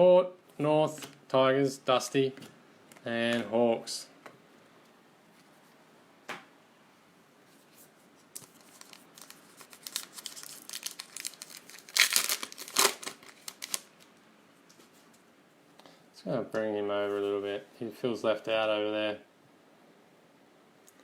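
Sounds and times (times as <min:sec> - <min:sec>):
wrapper crinkling: 0:08.3 - 0:14.2
card pack wrapper tearing: 0:08.4 - 0:14.1.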